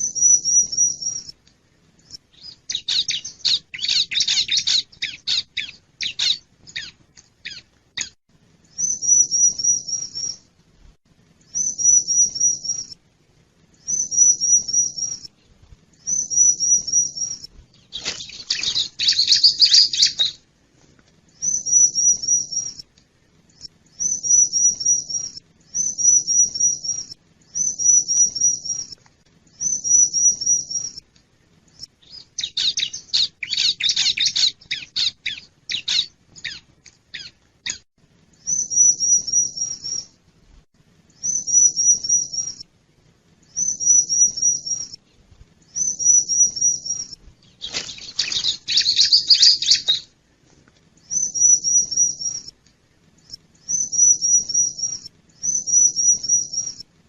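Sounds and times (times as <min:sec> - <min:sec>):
bird song high rapid phrases: 0:02.1 - 0:08.2, 0:11.5 - 0:13.0, 0:16.0 - 0:20.4, 0:24.0 - 0:29.0, 0:32.0 - 0:40.1, 0:41.2 - 0:42.7, 0:43.5 - 0:45.0, 0:45.7 - 0:50.1, 0:51.1 - 0:52.5, 0:53.6 - 0:56.9
bird scratchy chattering: 0:47.6 - 0:50.0.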